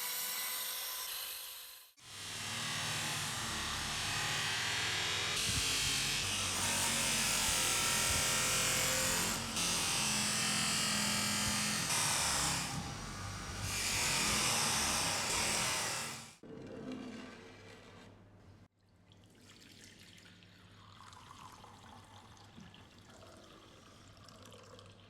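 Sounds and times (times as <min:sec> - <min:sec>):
handheld power tool whirring: 0:00.0 - 0:16.4.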